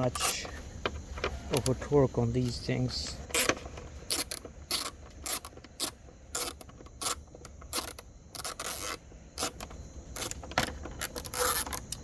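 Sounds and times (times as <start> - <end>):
ratchet wrench clicking: 0.0 - 0.4, 3.3 - 10.4, 11.0 - 12.0.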